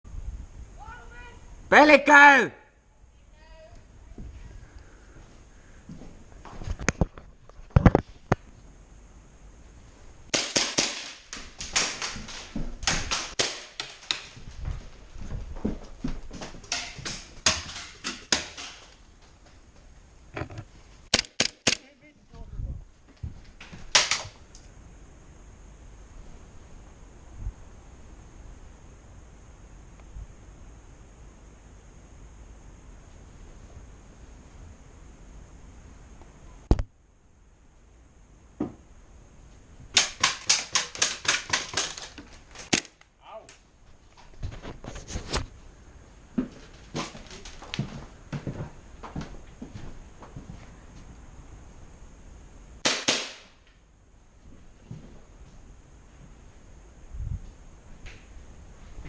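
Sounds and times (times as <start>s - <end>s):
airsoft gun shots: 10.3s - 14.0s, 21.1s - 21.9s, 23.9s - 24.4s, 39.9s - 42.0s, 52.8s - 53.6s.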